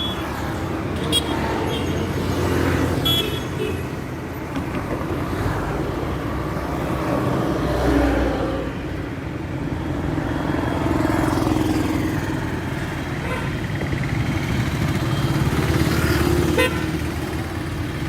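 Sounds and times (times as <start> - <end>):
passing traffic rumble: 0.0 - 18.0.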